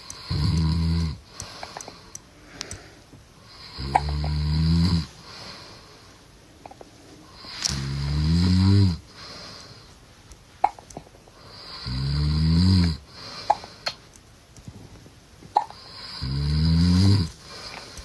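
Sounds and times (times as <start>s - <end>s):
faint clicks: 0.0s - 2.8s
man snoring: 0.1s - 1.4s, 3.5s - 5.4s, 7.4s - 9.3s, 11.5s - 13.3s, 15.8s - 17.6s.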